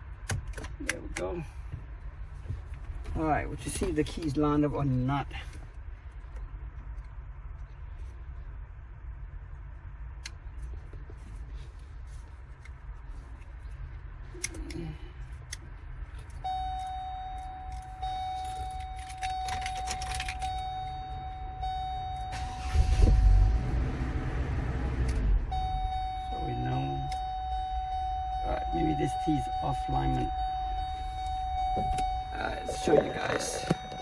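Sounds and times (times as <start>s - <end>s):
electronic warning tone: 25.5s - 34.0s.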